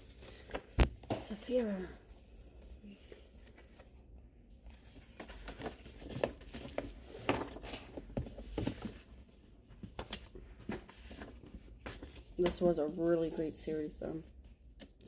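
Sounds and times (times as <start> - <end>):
paper rustling: 4.7 - 9.1, 9.8 - 15.0.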